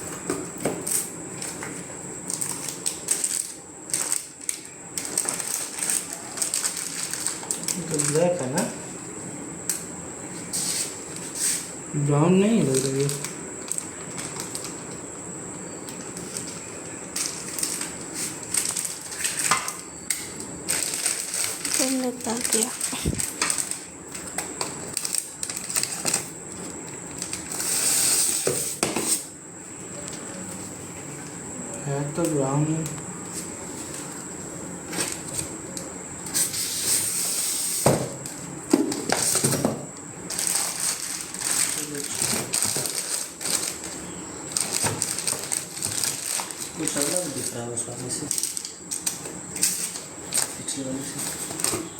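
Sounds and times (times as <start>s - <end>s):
steady high-pitched whine: 0.0s - 51.9s
hiss: 27.6s - 28.8s, 36.3s - 38.0s.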